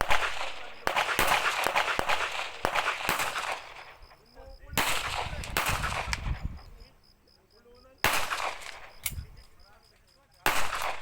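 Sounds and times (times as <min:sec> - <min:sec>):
pistol shots: 0:00.0 - 0:04.1, 0:04.7 - 0:06.4, 0:08.0 - 0:09.2, 0:10.4 - 0:11.0.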